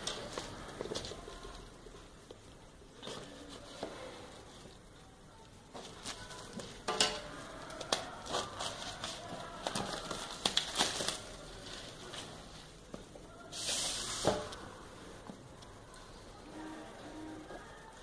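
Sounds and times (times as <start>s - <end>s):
cardboard and plastic crinkling: 5.7s - 6.8s, 7.5s - 13.0s
packaging rustle: 7.7s - 12.7s.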